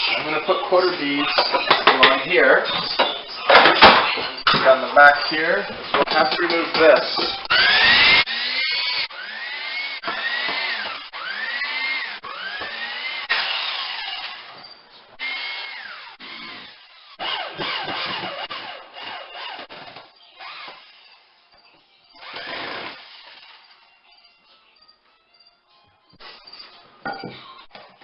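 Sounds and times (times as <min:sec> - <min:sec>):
cordless drill whining in bursts: 0:07.5 - 0:14.5, 0:15.2 - 0:19.6, 0:22.2 - 0:23.8.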